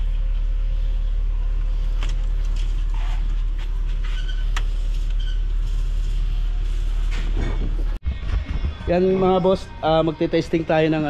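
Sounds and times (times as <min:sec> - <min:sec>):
machine hum with even pulse: 0:00.0 - 0:08.8.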